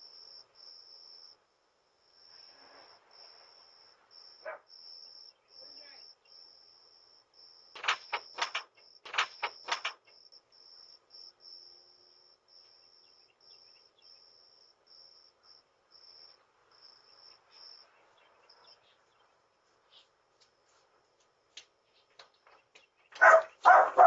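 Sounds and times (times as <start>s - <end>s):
crickets chirping: 0.0s - 24.0s
sharp knocks: 7.8s - 10.1s.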